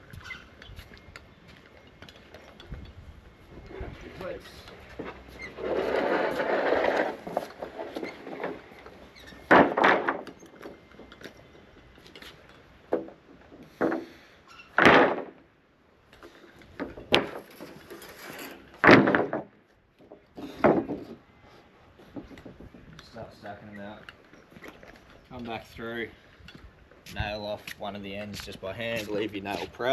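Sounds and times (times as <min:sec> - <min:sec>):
timber scraping on concrete: 0:03.5 - 0:11.3, 0:16.8 - 0:19.5
timber knocks and thuds: 0:09.5 - 0:10.4, 0:14.8 - 0:15.4, 0:18.8 - 0:21.2.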